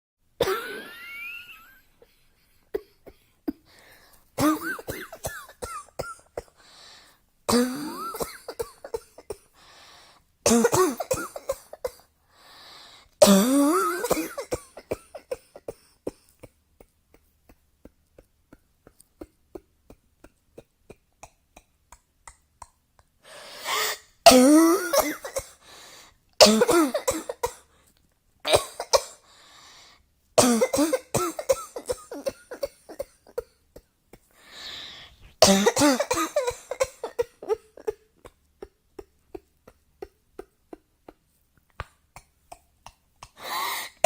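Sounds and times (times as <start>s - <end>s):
person coughing: 0.4s - 3.7s, 4.4s - 6.6s, 7.5s - 9.6s, 10.5s - 12.1s, 13.2s - 16.5s, 23.6s - 25.6s, 26.4s - 27.7s, 28.5s - 29.2s, 30.4s - 34.3s, 35.4s - 40.8s.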